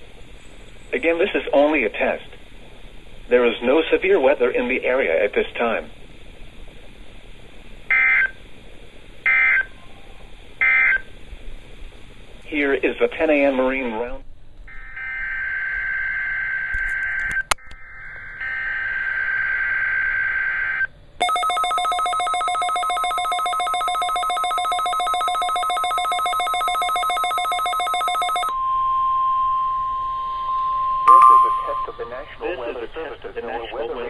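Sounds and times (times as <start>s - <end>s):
rapid trilling electronic alarm: 7.9s - 8.4s, 9.3s - 9.7s, 10.6s - 11.0s, 14.7s - 33.1s
steady warning alarm tone: 7.9s - 8.4s, 9.3s - 9.8s, 10.6s - 11.1s, 14.7s - 34.0s.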